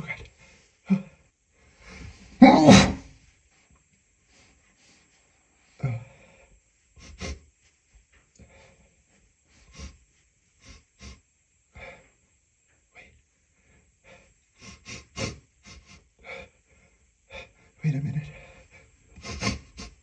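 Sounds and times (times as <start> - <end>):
man breathing sniffing and gasping: 5.8 - 7.4, 9.6 - 10.0, 10.6 - 11.2, 14.0 - 17.7, 18.3 - 20.0.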